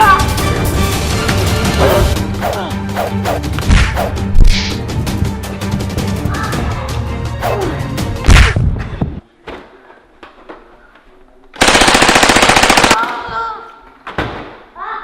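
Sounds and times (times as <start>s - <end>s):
soundtrack music: 0.0s - 8.2s
machine-gun fire: 11.6s - 13.1s.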